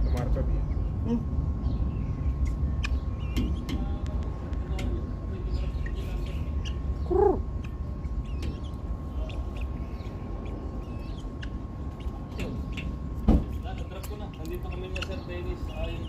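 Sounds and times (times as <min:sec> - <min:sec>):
birds chirping: 0:00.0 - 0:16.0
bird call bending up and down: 0:07.1 - 0:07.4.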